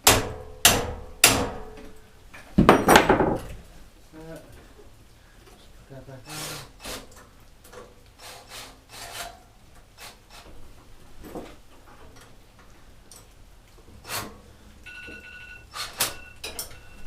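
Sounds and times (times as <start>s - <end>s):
parts scraping and rubbing: 6.3s - 12.3s, 13.9s - 14.5s
faint high steady tone: 14.8s - 17.0s.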